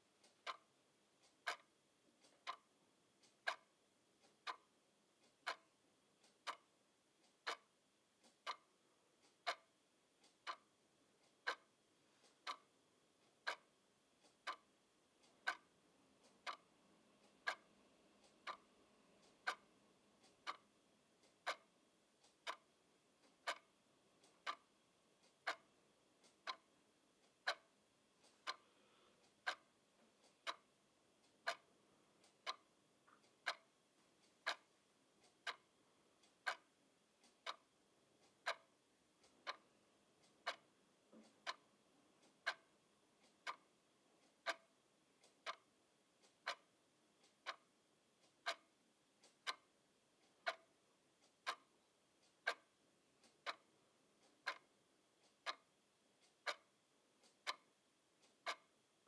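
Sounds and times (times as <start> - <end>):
mechanical clock ticking: 0.0 - 59.0.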